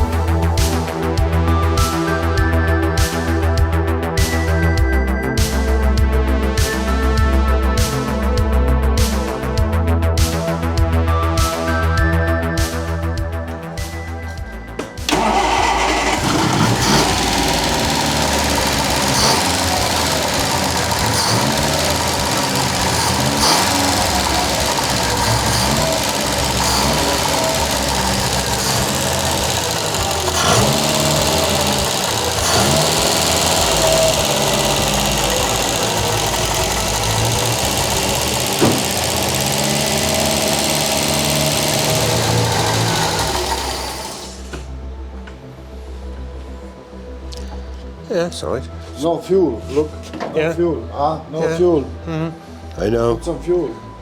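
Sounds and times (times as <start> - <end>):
background music: 0.0 - 54.0
car engine revving: 15.1 - 44.6.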